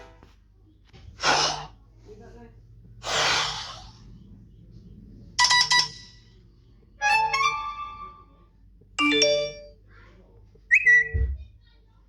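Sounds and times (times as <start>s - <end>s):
phone ringtone chimes: 9.0s - 9.8s.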